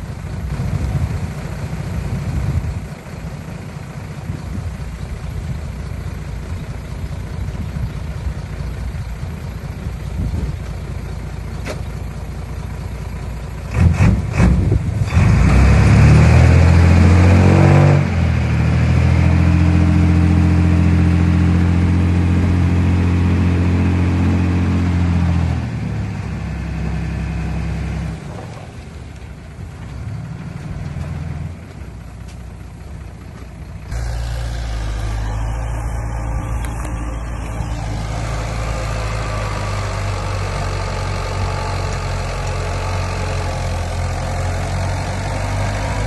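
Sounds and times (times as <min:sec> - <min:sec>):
heavy diesel engine revving: 0:13.1 - 0:28.6, 0:32.8 - 0:46.0.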